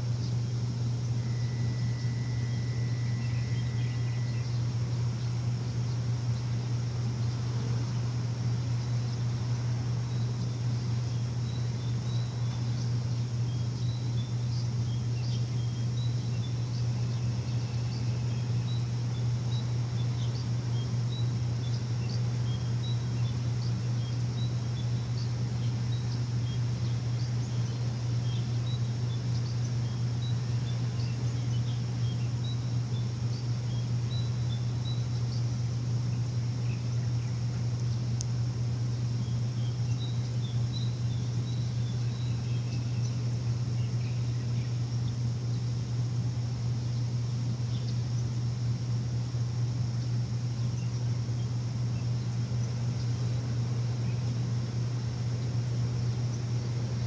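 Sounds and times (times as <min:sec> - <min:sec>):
low machine hum: 0:00.0 - 0:57.0
steady hiss: 0:00.0 - 0:57.0
thin whistle-like tone: 0:01.1 - 0:04.7.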